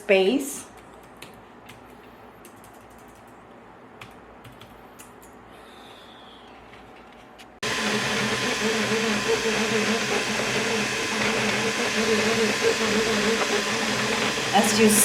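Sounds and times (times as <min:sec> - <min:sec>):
printer fan whirring: 0:07.6 - 0:15.0
stepper motors humming: 0:07.6 - 0:15.0.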